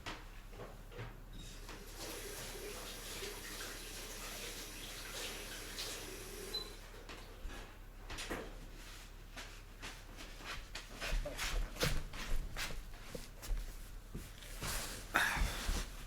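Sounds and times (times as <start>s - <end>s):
shuffling and rustling: 7.4s - 16.0s.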